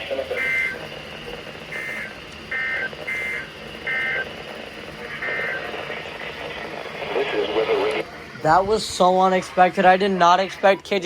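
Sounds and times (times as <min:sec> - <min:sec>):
shrill two-pitch data chirps: 0:00.0 - 0:00.9, 0:01.7 - 0:04.4, 0:05.0 - 0:05.9.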